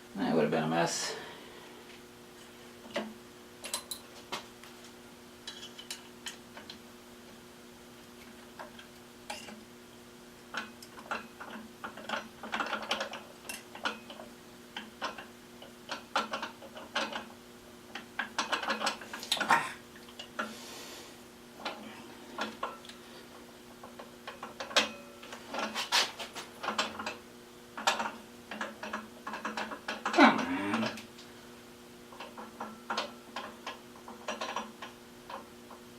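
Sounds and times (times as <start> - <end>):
steady low hum: 0.0 - 35.9
metallic clicks and clanks: 2.9 - 4.0, 10.5 - 17.3, 17.9 - 20.5, 23.8 - 25.9, 26.6 - 27.2, 27.8 - 31.1, 32.1 - 35.8.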